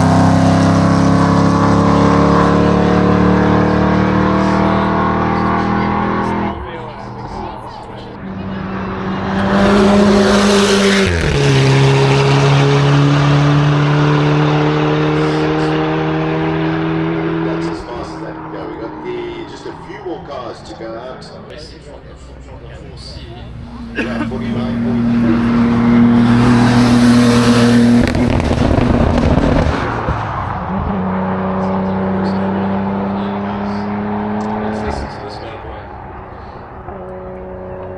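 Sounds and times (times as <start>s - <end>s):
race car passing at high speed: 0.0s - 21.4s, 22.2s - 37.9s
exhaust crackling and popping: 25.2s - 30.9s.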